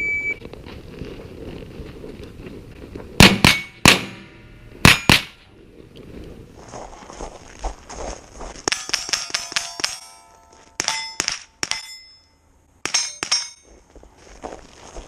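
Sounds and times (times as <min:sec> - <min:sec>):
rifle shots: 0:03.2 - 0:05.4
steel plates ringing: 0:08.7 - 0:13.8.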